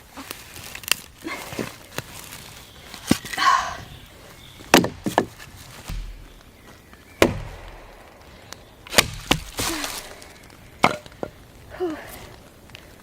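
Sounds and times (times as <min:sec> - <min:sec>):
sharp knocks on wood: 0:04.7 - 0:06.6.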